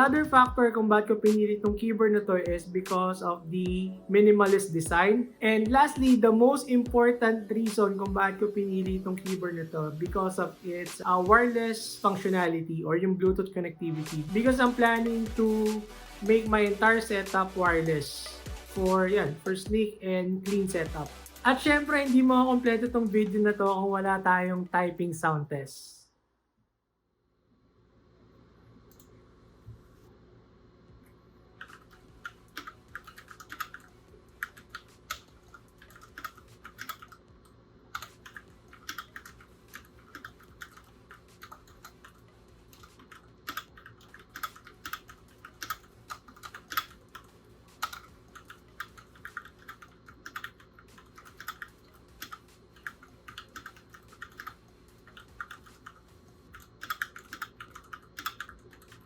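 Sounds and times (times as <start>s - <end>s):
mechanical keyboard typing: 31.6s - 37.2s, 38.0s - 59.0s.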